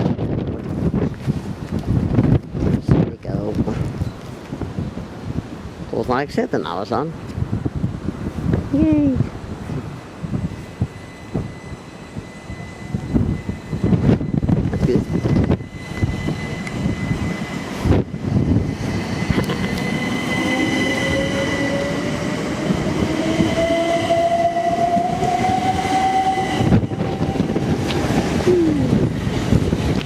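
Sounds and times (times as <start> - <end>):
train whine rising in pitch: 7.9 - 30.0.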